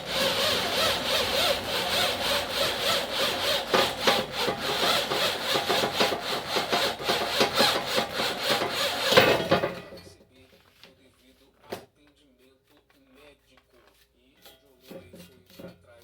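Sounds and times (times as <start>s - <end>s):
hand saw cutting: 0.0s - 9.8s.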